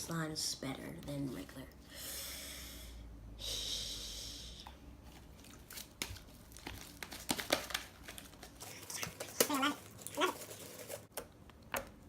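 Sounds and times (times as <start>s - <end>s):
slime squishing: 5.0s - 11.1s
small crackles and pops: 5.6s - 10.3s.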